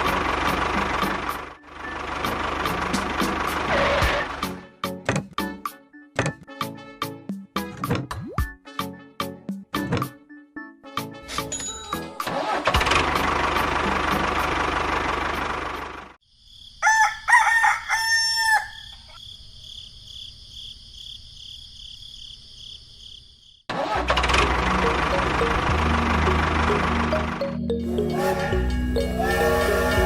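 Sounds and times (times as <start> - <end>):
rooster crowing: 16.8 - 19.2.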